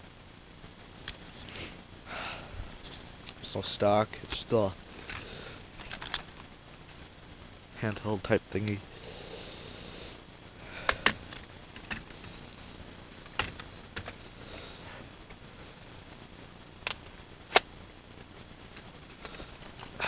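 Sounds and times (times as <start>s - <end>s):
airsoft shotgun hiss: 1.4s - 1.8s, 8.9s - 11.1s.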